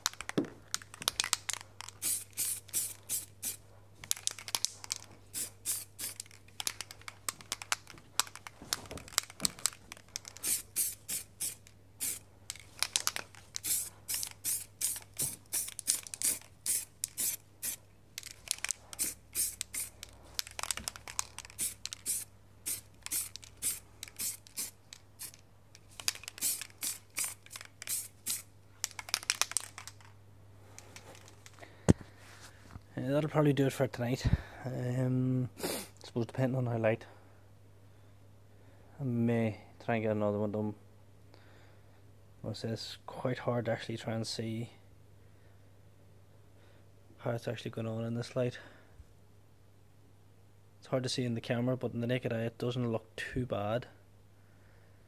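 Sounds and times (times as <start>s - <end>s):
aerosol can spraying bursts: 2.0s - 3.6s, 5.3s - 6.2s, 10.4s - 12.2s, 13.6s - 17.8s, 18.9s - 20.0s, 21.5s - 25.4s, 26.3s - 28.5s.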